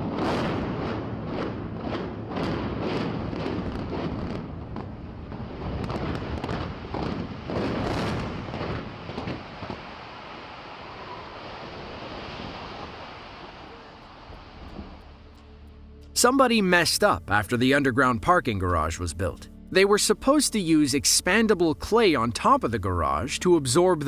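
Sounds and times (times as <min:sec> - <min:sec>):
building collapsing rumble: 0:00.0 - 0:15.4
windy hiss: 0:02.7 - 0:15.6.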